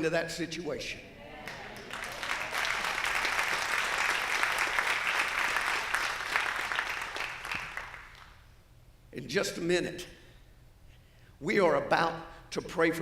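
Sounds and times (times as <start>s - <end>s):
congregation applauding: 1.4s - 8.4s.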